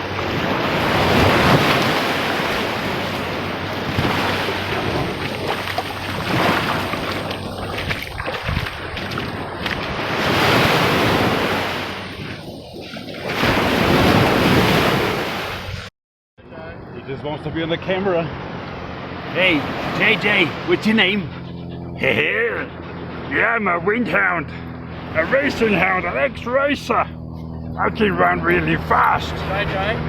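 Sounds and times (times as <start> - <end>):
wind buffeting microphone: 0.0 - 15.2
ocean surf washing in: 0.0 - 15.9, 17.7 - 21.3.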